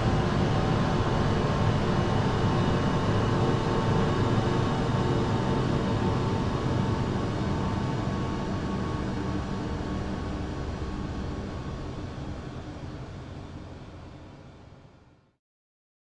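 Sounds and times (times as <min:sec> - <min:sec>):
machine roar with low rumble: 0:00.0 - 0:14.8.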